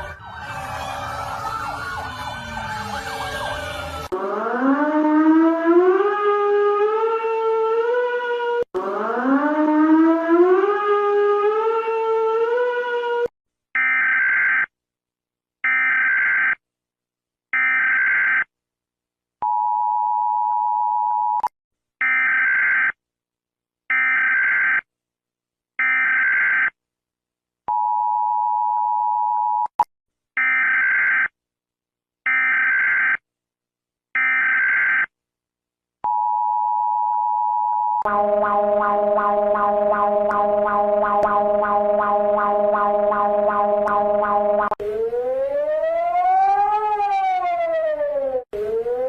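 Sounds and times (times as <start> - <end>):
long low alert tone: 38.1 - 49.0.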